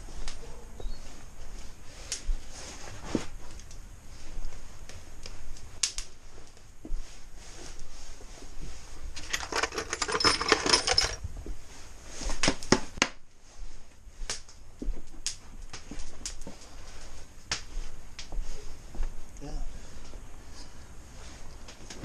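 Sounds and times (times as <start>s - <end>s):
small hard objects clinking: 9.2s - 11.2s.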